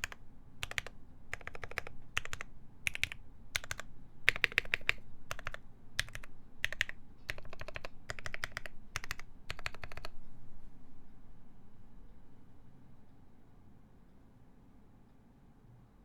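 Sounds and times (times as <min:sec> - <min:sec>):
mechanical keyboard typing: 0:00.0 - 0:10.2.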